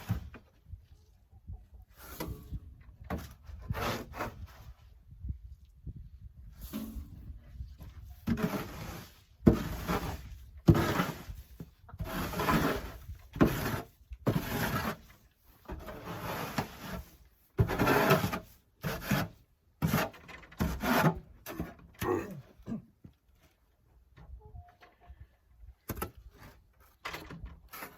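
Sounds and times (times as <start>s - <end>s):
snow shovel scraping floor: 8.3s - 21.6s.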